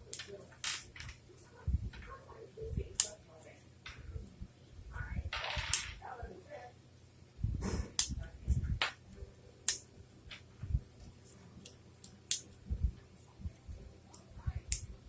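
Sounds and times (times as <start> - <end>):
plastic pieces snapping together: 11.6 - 12.5.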